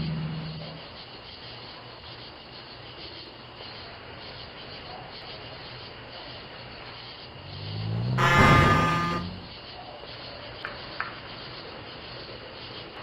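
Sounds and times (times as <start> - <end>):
passing vehicle hum: 7.3 - 9.6.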